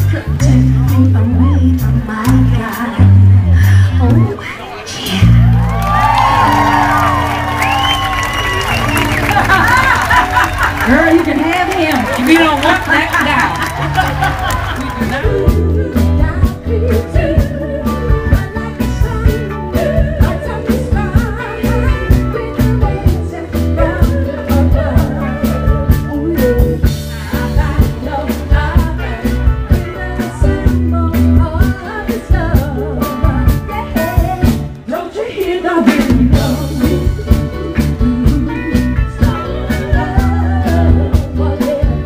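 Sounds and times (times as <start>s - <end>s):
woman singing: 0.0s - 5.4s, 14.8s - 42.0s
live band playing soul music: 0.0s - 42.0s.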